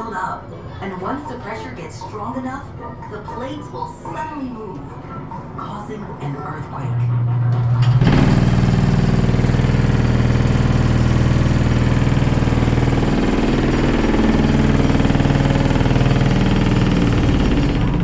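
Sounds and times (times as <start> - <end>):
low mechanical rumble with rattling: 6.2 - 18.0.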